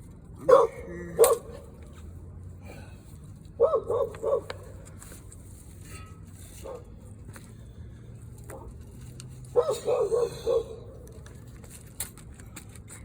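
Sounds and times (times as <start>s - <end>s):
dog barking: 0.4s - 1.6s, 3.6s - 4.6s, 9.5s - 10.9s.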